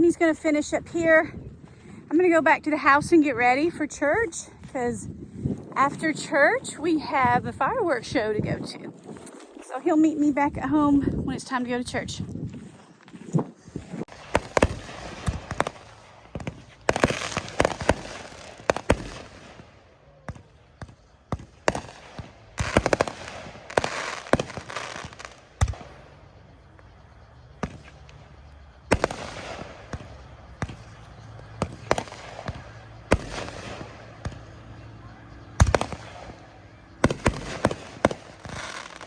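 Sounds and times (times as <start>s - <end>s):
fireworks crackling: 13.8s - 39.0s
fireworks banging: 14.0s - 26.2s, 26.8s - 39.0s.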